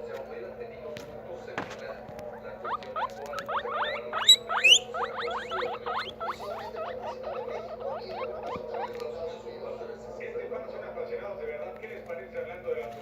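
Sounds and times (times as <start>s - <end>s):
guinea pigs wheeking: 1.6s - 10.4s.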